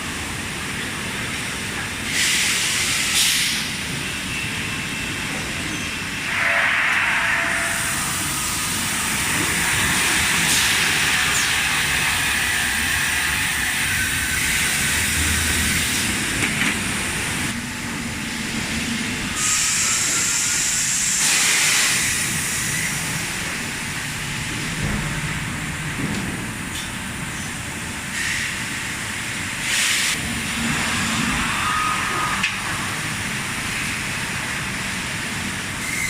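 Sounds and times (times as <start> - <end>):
thermoforming machine running: 6.2 - 26.8.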